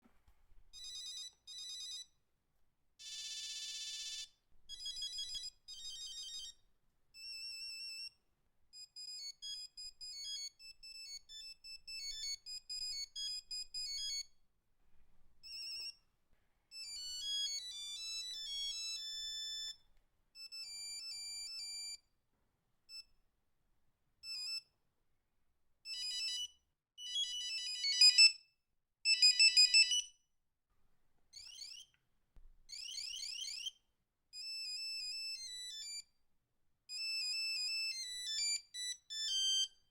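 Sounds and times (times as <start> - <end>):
phone ringtone beeping melody: 0.8 - 2.0, 3.0 - 6.6, 8.8 - 14.2, 16.7 - 19.8, 25.9 - 28.4, 29.1 - 30.1, 36.9 - 39.8.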